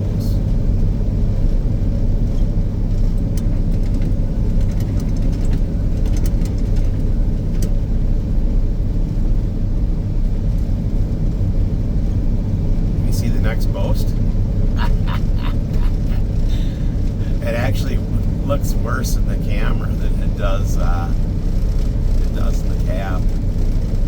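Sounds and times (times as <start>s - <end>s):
diesel engine droning: 0.0s - 24.0s
faint clicks and rattles: 2.4s - 7.8s.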